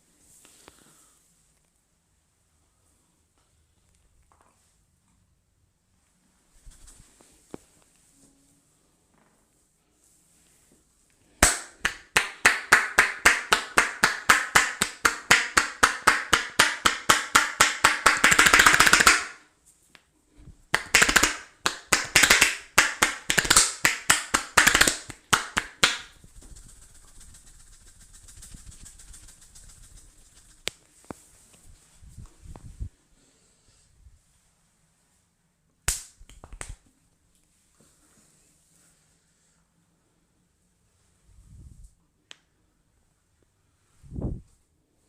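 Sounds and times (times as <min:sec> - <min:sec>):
rapid percussive taps on a head: 0:11.4 - 0:19.4, 0:20.7 - 0:30.8.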